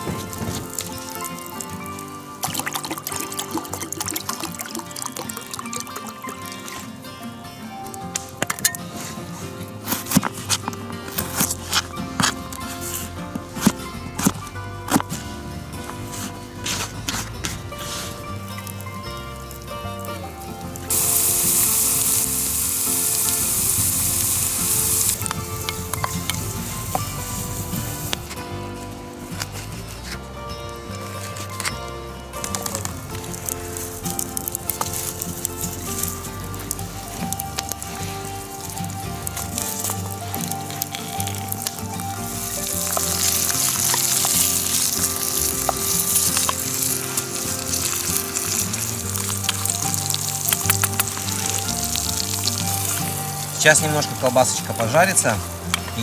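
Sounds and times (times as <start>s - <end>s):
fat popping and crackling: 0.0s - 56.0s
sausage sizzling in a pan: 20.2s - 28.3s, 32.6s - 56.0s.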